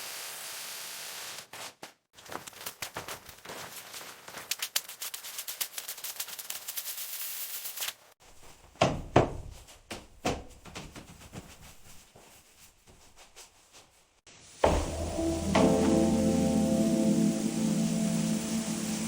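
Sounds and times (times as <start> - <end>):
separate knocks: 14.6 - 16.5.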